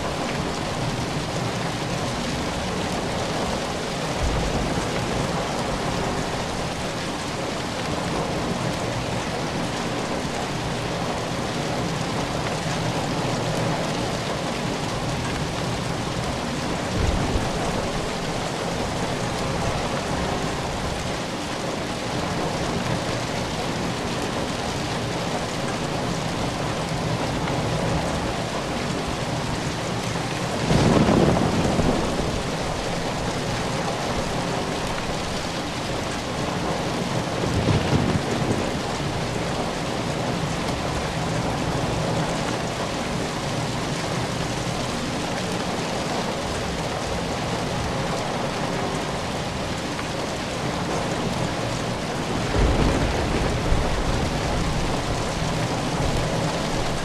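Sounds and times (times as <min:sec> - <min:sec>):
steady rain falling: 0:00.0 - 0:57.0
thunder rumbling: 0:16.7 - 0:21.0, 0:30.4 - 0:34.3, 0:37.2 - 0:42.3, 0:52.2 - 0:57.0.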